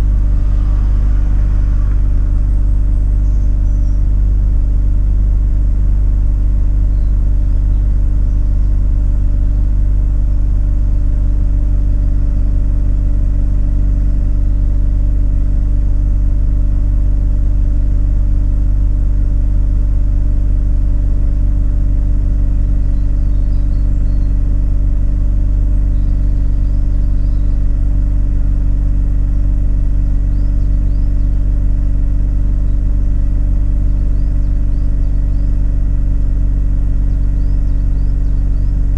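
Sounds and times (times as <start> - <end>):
rotary engine idling: 0.0 - 38.9.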